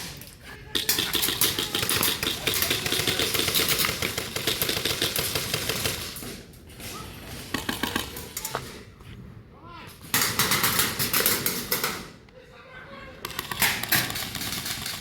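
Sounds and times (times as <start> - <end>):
airsoft guns firing full auto: 0.7 - 6.4, 10.1 - 12.2, 13.2 - 15.0.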